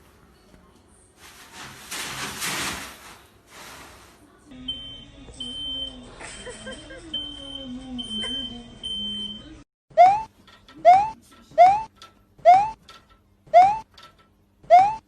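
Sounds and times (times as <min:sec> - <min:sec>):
high-pitched electronic beeps: 0:09.9 - 0:12.8, 0:13.5 - 0:13.9, 0:14.7 - 0:15.0.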